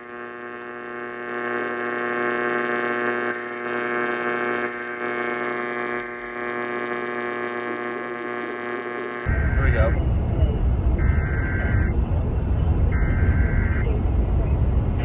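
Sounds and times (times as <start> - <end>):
harsh electronic alarm tone: 0.0 - 12.1, 12.7 - 14.0.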